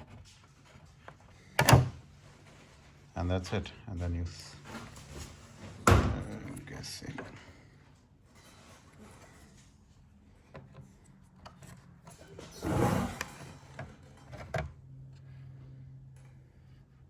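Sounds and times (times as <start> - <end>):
loud scraping rub: 12.4 - 13.6.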